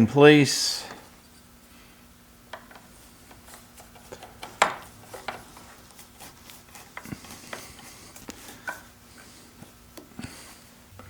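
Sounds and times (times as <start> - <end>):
screwdriver clicks and scrapes: 2.5 - 8.8.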